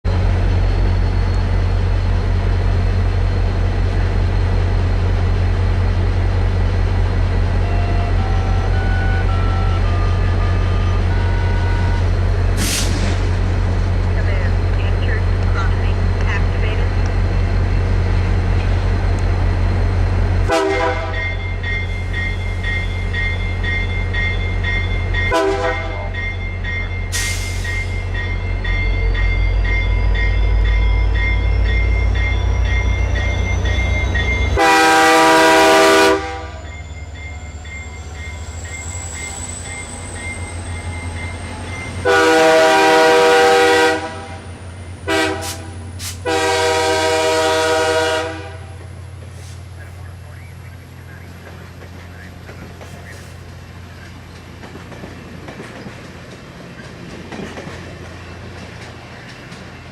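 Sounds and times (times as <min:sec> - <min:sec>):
diesel locomotive engine drone: 0:00.0 - 0:59.9
train chime horn: 0:07.6 - 0:12.1, 0:20.5 - 0:44.4, 0:45.1 - 0:48.8.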